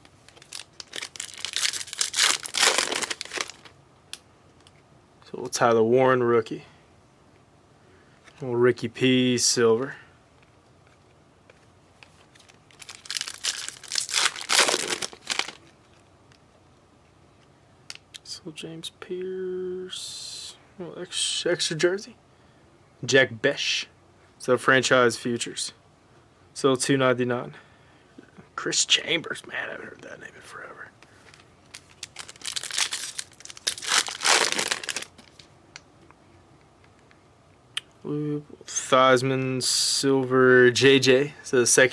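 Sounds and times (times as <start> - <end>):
plastic wrapper crinkling and tearing: 0.1 - 3.7, 12.0 - 16.0, 31.2 - 35.5.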